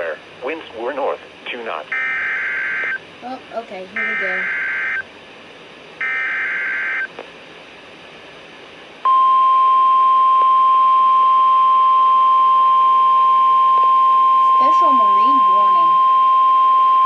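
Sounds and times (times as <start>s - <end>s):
steady warning alarm tone: 1.9s - 3.0s, 3.9s - 5.1s, 6.0s - 7.1s, 9.1s - 17.0s
digital data tones: 4.0s - 5.0s.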